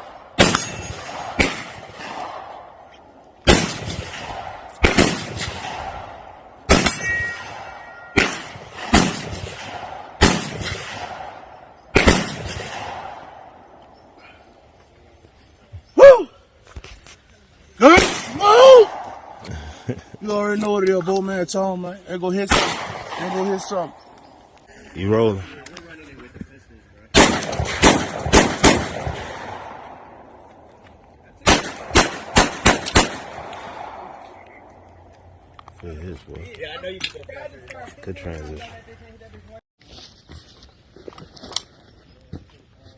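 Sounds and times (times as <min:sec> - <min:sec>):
pistol shots echoing: 0:00.0 - 0:13.8, 0:17.8 - 0:19.4, 0:22.4 - 0:24.1, 0:27.1 - 0:30.6, 0:31.4 - 0:34.8.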